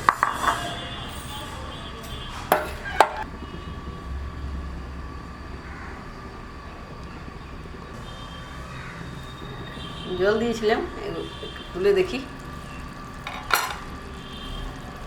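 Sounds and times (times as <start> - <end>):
metal cookware clanking on pot: 2.5 - 3.3, 13.3 - 13.9.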